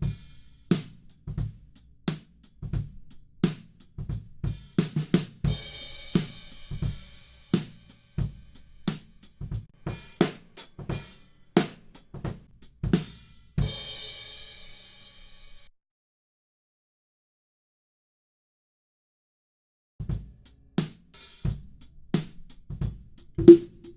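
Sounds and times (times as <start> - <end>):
drum kit groove: 0.0 - 14.8, 20.0 - 23.9.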